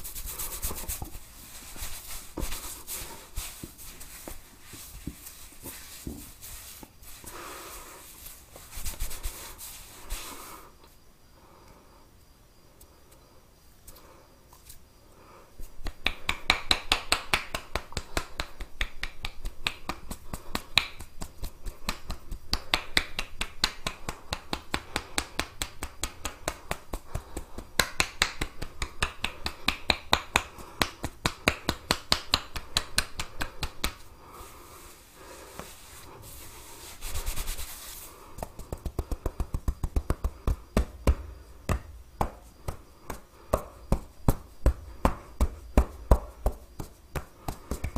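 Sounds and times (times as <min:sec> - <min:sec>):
fingers scratching scalp and hair: 0:00.0 - 0:07.2, 0:35.6 - 0:40.4.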